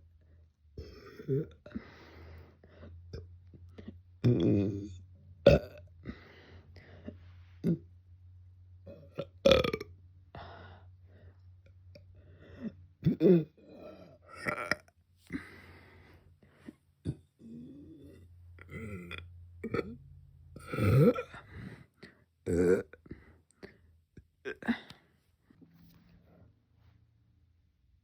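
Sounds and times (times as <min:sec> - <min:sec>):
woman burping: 0:00.8 - 0:01.7, 0:04.2 - 0:05.9, 0:07.6 - 0:07.9, 0:08.9 - 0:09.9, 0:13.0 - 0:15.4, 0:17.1 - 0:20.0, 0:20.6 - 0:21.4, 0:22.4 - 0:23.1, 0:24.4 - 0:25.0.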